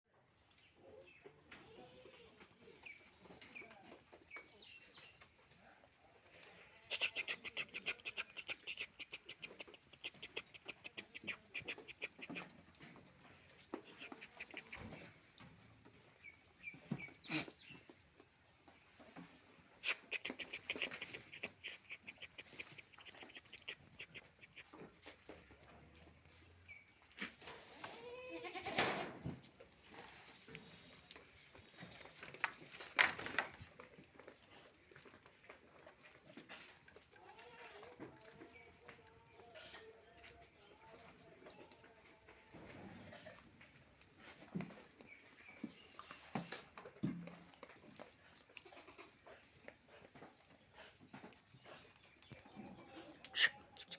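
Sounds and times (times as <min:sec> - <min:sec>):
goats bleating: 0:28.0 - 0:28.8, 0:48.6 - 0:49.2.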